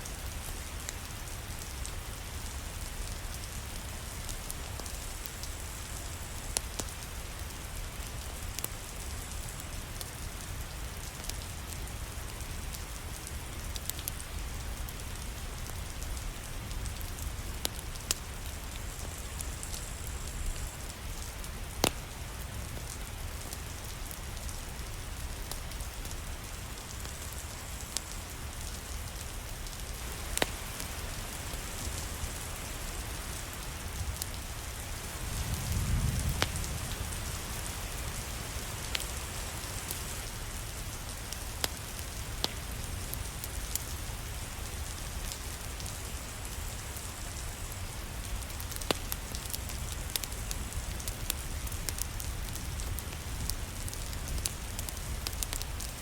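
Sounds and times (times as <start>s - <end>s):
steady rain hiss: 0.0s - 56.0s
rain drop ticks: 1.6s - 7.0s, 22.7s - 31.0s, 38.8s - 39.1s, 45.0s - 56.0s.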